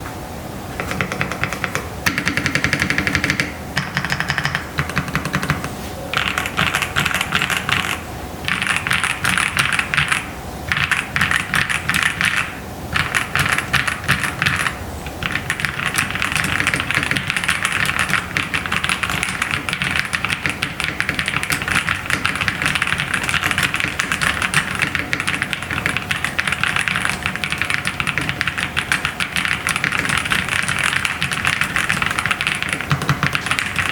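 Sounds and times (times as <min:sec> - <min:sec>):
mechanical keyboard typing: 0:00.8 - 0:33.9.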